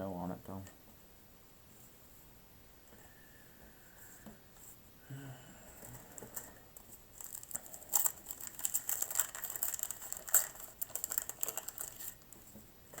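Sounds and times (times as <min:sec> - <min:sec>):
cards rustling and clicking: 0:05.8 - 0:13.0.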